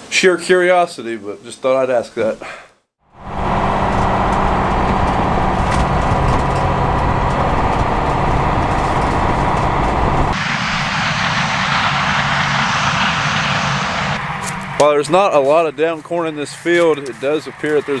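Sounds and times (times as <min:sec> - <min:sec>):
farm machinery engine hum: 0:03.2 - 0:18.0
hissing mechanical whir: 0:03.3 - 0:14.9.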